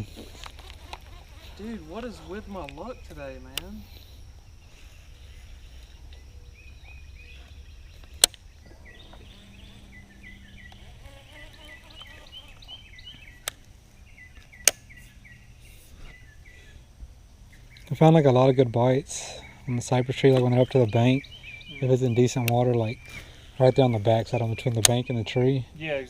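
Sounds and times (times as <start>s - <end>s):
steady low rumble: 0.0s - 11.0s
birds chirping: 0.0s - 26.0s.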